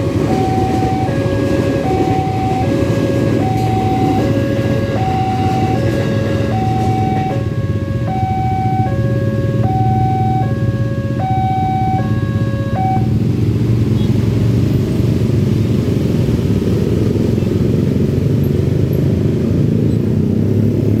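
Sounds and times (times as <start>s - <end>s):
level crossing warning siren: 0.0s - 14.1s
motorcycle and car engines: 0.0s - 21.0s.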